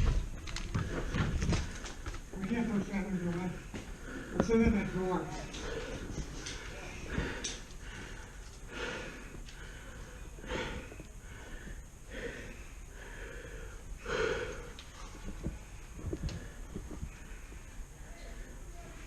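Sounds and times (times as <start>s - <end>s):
person breathing: 3.5s - 4.4s, 5.4s - 19.0s.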